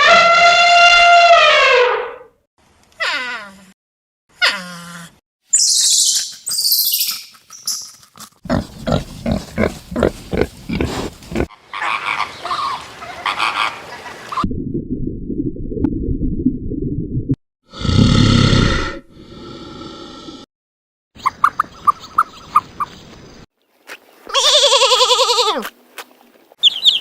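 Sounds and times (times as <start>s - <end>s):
low rumbling noise: 14.5s - 17.4s.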